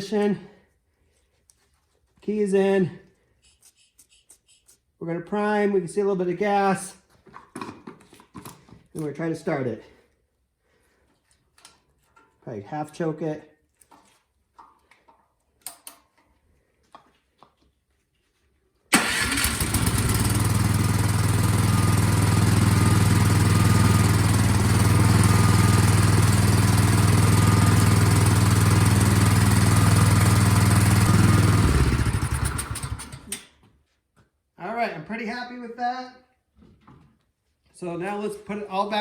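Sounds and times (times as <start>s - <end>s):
small engine starting and running: 18.9s - 33.5s.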